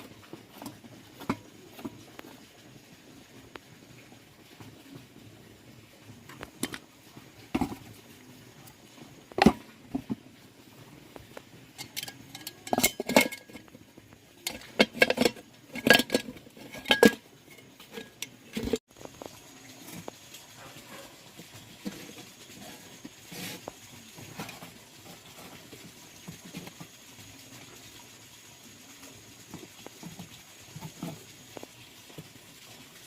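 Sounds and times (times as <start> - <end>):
metal tools clinking: 11.8 - 13.7, 14.5 - 18.8.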